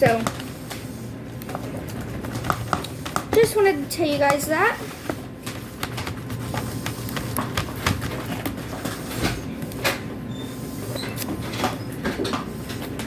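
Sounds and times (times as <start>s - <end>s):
slime clicking and scraping in bowl: 0.0s - 9.0s.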